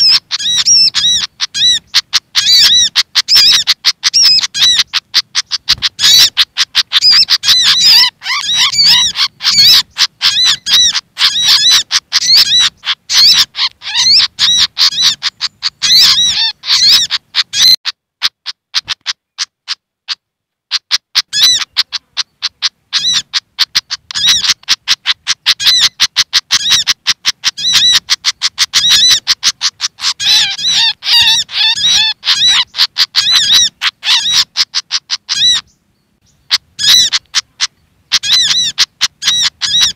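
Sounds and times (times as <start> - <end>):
chattering bird calls: 0.0 - 19.8, 20.7 - 39.9.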